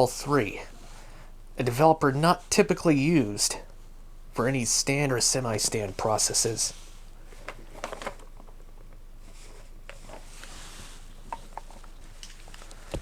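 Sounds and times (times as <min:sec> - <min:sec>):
low hum and hiss: 0:00.0 - 0:13.0
soft breath: 0:00.7 - 0:01.4.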